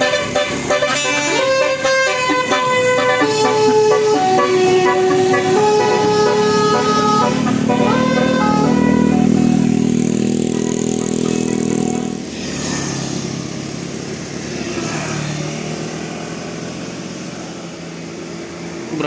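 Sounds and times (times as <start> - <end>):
multi-tone bus horn tune: 0.0 - 12.3
bus engine running: 0.0 - 12.4
faint passing traffic: 0.0 - 19.0.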